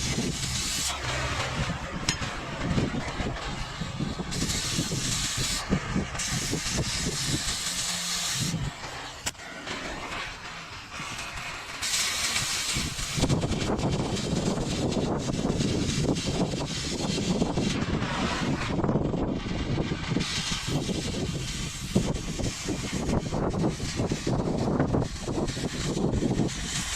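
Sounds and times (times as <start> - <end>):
cutting torch hissing: 0.0 - 26.9
low rumble: 0.0 - 26.9.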